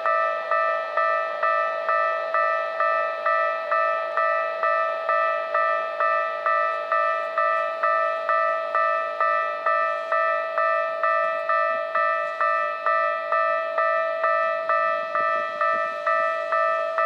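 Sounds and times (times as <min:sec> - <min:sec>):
level crossing warning bell: 0:00.0 - 0:17.0.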